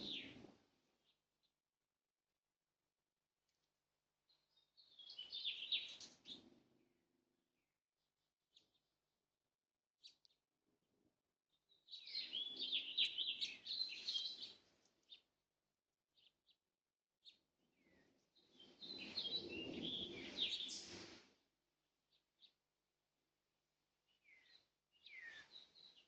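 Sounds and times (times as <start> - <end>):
small birds chirping and twittering: 0.0 - 1.2, 4.3 - 6.6, 8.5 - 8.9, 10.0 - 10.4, 11.5 - 15.4, 16.1 - 16.6, 17.2 - 21.5, 22.1 - 22.6, 24.1 - 26.0.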